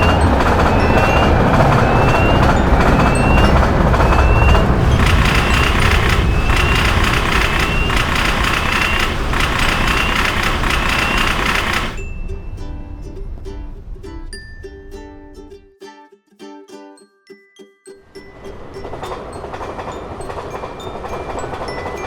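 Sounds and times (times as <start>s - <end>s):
railroad crossing beeps: 0.0s - 12.6s, 18.2s - 22.0s
railroad crossing bell ringing: 0.0s - 12.6s, 18.1s - 22.0s.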